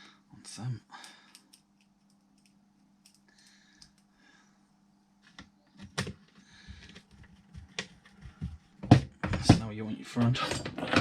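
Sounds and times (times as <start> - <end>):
small parts clicking and knocking: 1.0 - 4.1.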